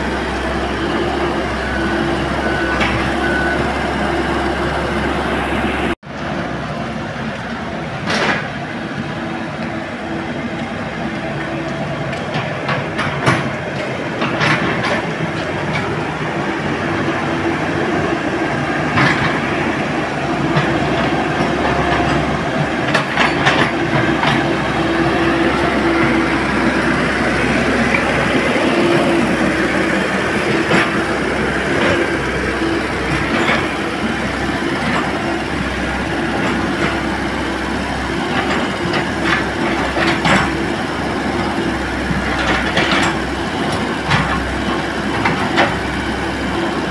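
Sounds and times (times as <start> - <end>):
excavator diesel engine running: 0.0 - 46.9
metallic clanks and knocks: 20.5 - 26.2.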